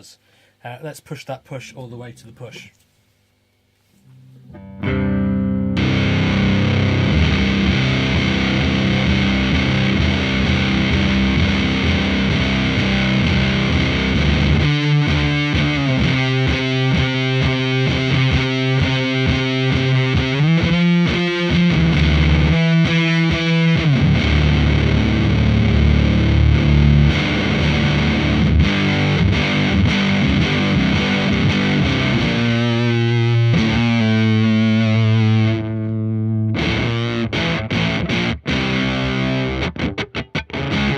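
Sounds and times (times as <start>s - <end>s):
distorted fuzz electric guitar: 4.6s - 40.9s.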